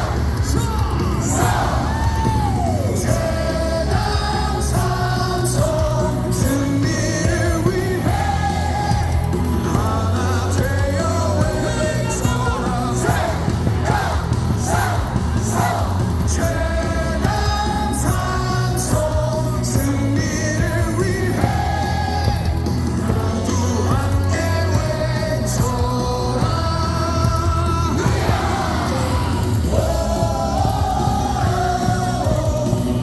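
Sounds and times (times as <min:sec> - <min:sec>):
crowd shouts: 0:00.0 - 0:05.2, 0:11.7 - 0:18.5, 0:27.8 - 0:32.8
crowd singing a cheer song: 0:00.0 - 0:33.0
loud amplified music with beat: 0:00.0 - 0:33.0.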